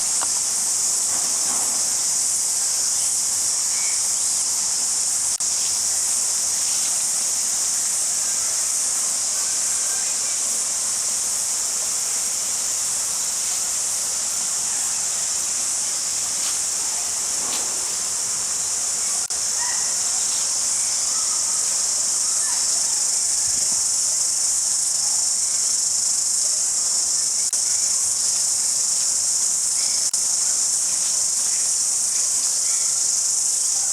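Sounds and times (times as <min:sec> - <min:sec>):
crickets chirping: 0:00.0 - 0:33.9.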